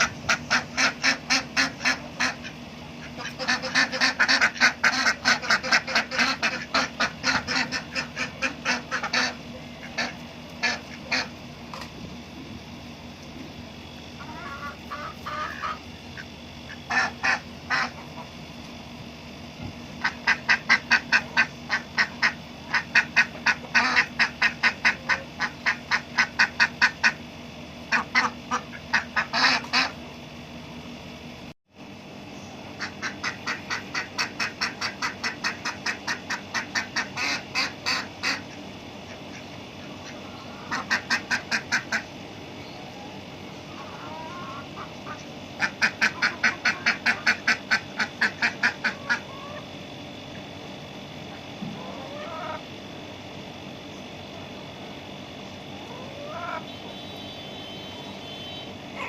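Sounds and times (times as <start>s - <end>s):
ducks quacking: 0.0s - 11.9s, 14.2s - 18.4s, 20.0s - 27.2s, 27.9s - 30.0s, 32.8s - 42.1s, 43.7s - 49.7s, 55.9s - 56.8s
steady low hum: 0.0s - 59.0s.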